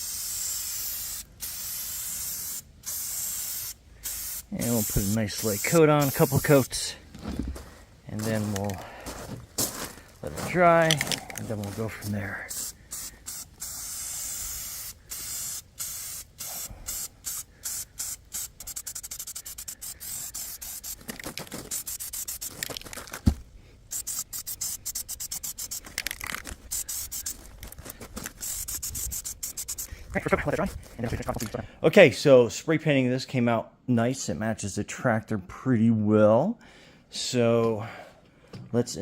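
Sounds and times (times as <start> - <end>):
spray paint can hissing: 0.0 - 6.8, 10.9 - 23.2, 23.9 - 30.0.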